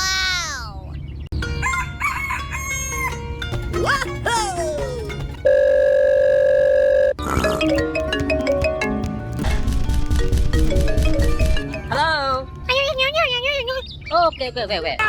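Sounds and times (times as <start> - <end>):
music: 1.4 - 5.5, 7.2 - 13.8.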